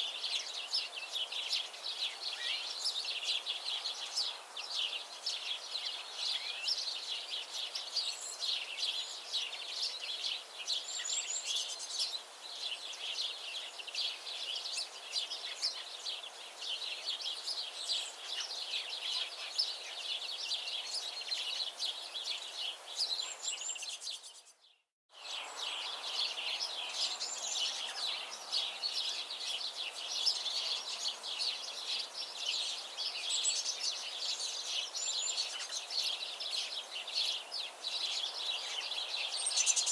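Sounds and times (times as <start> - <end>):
birds chirping and singing: 14.4 - 24.7, 25.4 - 39.9.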